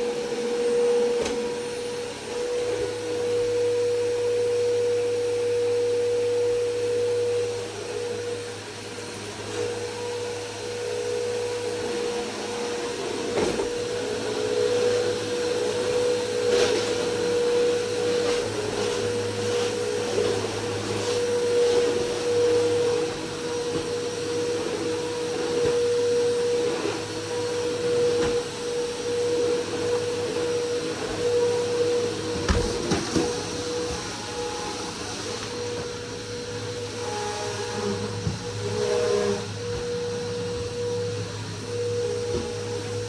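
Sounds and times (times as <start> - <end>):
vacuum cleaner motor whine: 0.0 - 43.0
vacuum cleaner knocks and rattles: 32.3 - 33.4.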